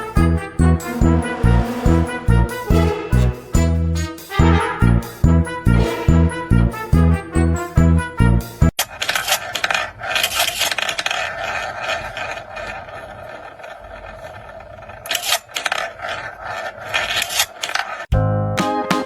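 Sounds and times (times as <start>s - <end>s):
music with plucked notes: 0.0s - 8.7s, 18.1s - 19.0s
scraping on a surface: 8.8s - 18.1s.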